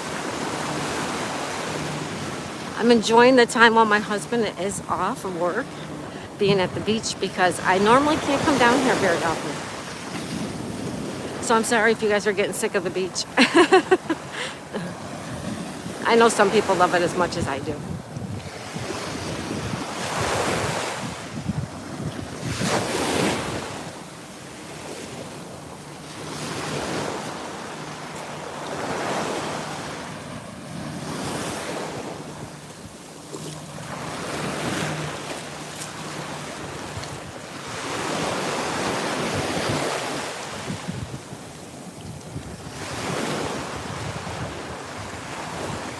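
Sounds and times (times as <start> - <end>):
surf breaking on beach: 0.0 - 45.9
wind buffeting microphone: 13.8 - 24.1, 30.1 - 45.9.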